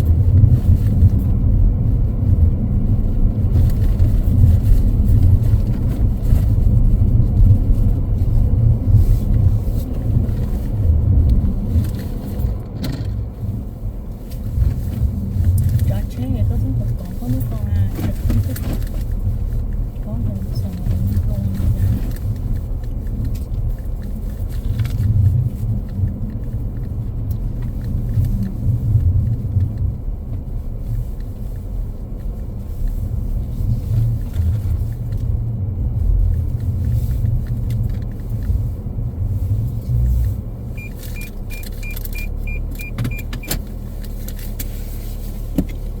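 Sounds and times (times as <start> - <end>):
car rumbling in motion: 0.0 - 46.0
short high beeps: 40.8 - 43.4.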